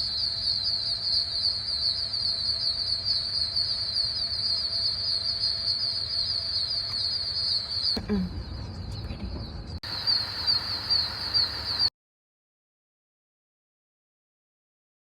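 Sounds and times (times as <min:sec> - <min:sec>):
insects and frogs calling: 0:00.0 - 0:09.2, 0:09.8 - 0:11.9
low rumble: 0:07.9 - 0:10.6.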